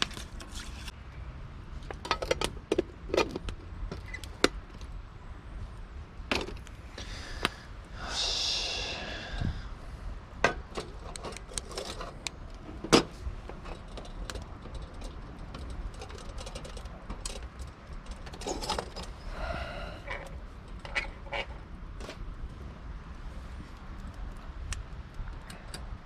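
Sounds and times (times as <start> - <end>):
metal objects clinking: 13.6 - 19.2.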